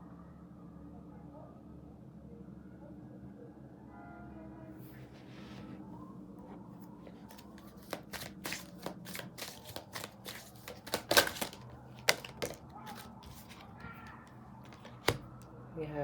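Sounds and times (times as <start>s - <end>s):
cards shuffling snaps: 7.2s - 15.4s.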